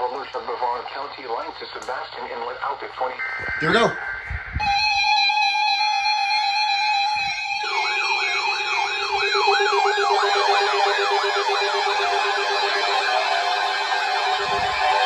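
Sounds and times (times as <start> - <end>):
fast warbling siren sweep: 3.2 - 15.0.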